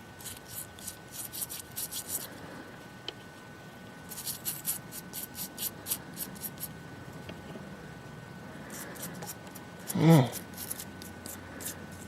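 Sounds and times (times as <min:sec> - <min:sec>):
toothbrush scrubbing metal: 0:00.2 - 0:02.3, 0:04.1 - 0:06.7, 0:08.7 - 0:12.0.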